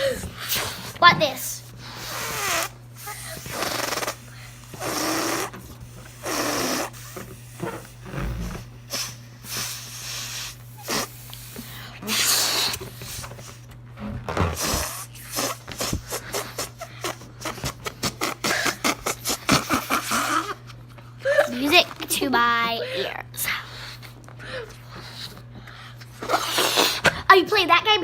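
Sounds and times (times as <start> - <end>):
child blowing up balloon: 0.0 - 1.0, 1.7 - 20.6, 26.1 - 27.2.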